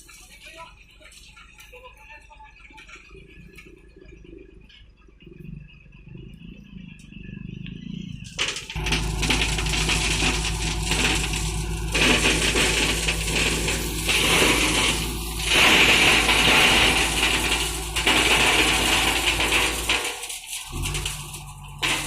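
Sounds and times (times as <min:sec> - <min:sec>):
backhoe engine hum: 0:05.2 - 0:22.0
bucket scraping stones and soil: 0:08.5 - 0:22.0.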